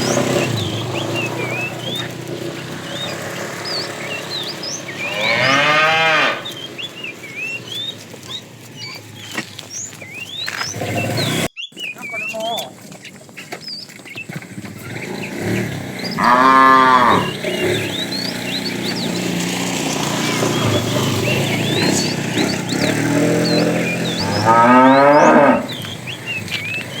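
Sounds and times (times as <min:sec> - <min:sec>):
cattle mooing: 0:00.0 - 0:06.9, 0:14.8 - 0:27.0.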